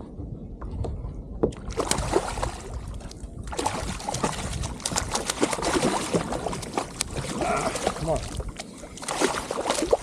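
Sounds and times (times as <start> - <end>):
fish thrashing water splashes: 1.7 - 2.9, 3.5 - 10.0.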